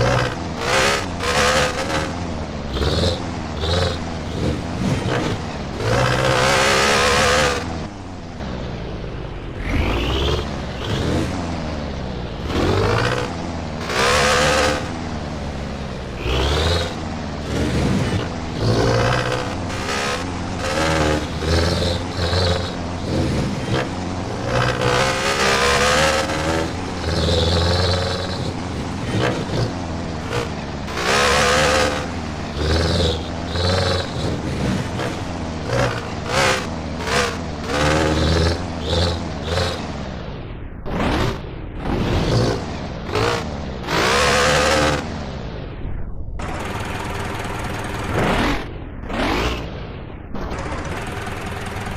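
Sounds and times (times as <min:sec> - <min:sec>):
engine revving through muffler: 0:12.4 - 0:15.0, 0:16.2 - 0:39.8, 0:42.1 - 0:45.0.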